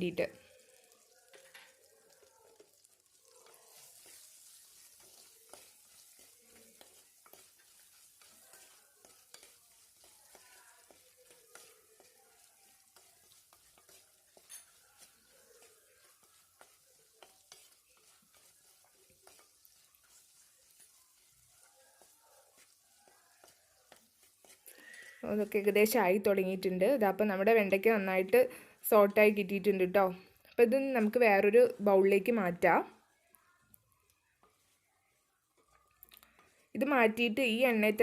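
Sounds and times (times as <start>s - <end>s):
vegetables sizzling in a pan: 0.0s - 30.0s, 34.3s - 38.0s
spoon scraping a pan: 0.5s - 26.0s, 35.6s - 36.7s.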